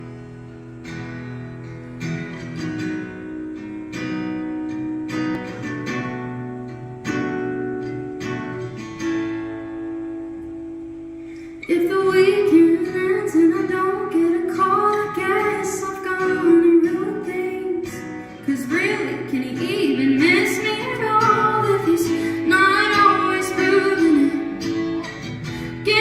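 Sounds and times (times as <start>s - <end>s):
acoustic guitar: 0.0s - 26.0s
woman singing: 11.6s - 26.0s.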